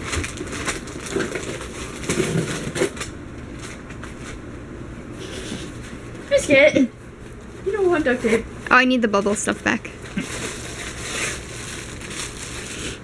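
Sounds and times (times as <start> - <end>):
paper crinkling and crushing: 0.0 - 4.4, 10.0 - 13.0.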